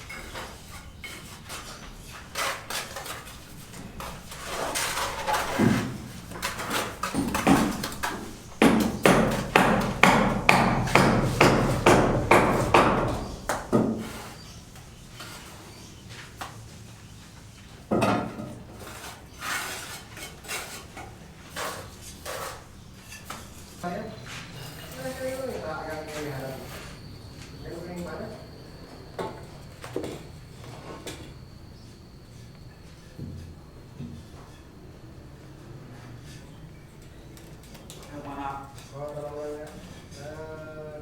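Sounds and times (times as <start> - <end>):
hammer blows: 7.1 - 14.2.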